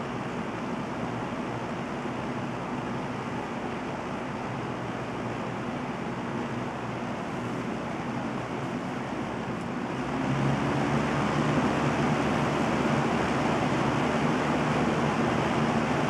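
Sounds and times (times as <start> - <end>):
faint low motor hum: 0.0 - 16.0
box fan whooshing: 5.2 - 16.0.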